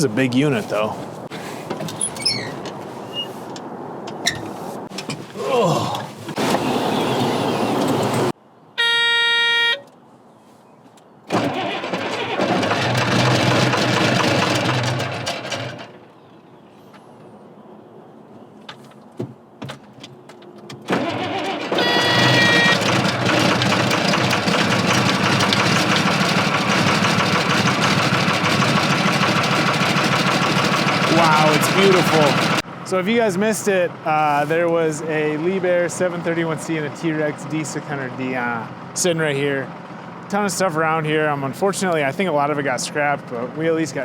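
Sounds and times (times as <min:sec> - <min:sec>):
diesel engine running: 0:06.3 - 0:08.3, 0:11.3 - 0:16.1, 0:21.0 - 0:44.0
short pitched beeps: 0:08.8 - 0:09.9, 0:21.8 - 0:22.8.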